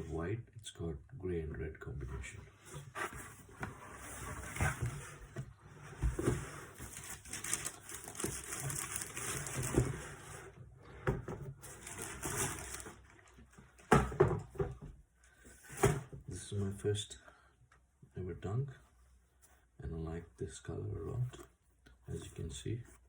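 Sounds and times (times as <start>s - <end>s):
cardboard box rustling: 2.8s - 10.5s, 11.6s - 13.4s.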